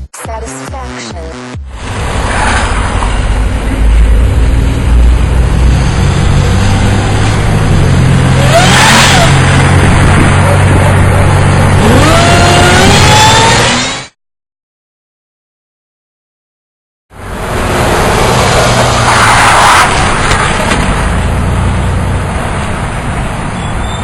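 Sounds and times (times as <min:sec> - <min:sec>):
supercharger whine: 0:01.3 - 0:14.1
car engine running loud: 0:01.6 - 0:14.1, 0:17.1 - 0:24.0.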